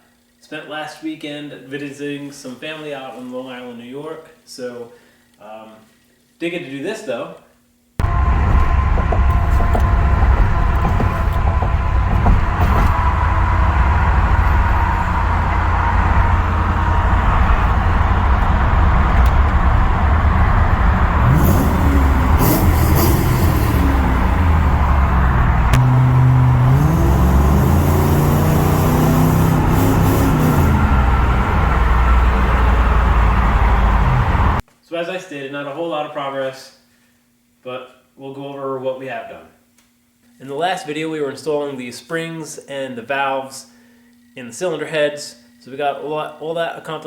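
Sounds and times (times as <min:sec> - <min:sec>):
car road and engine rumble: 0:08.0 - 0:34.6.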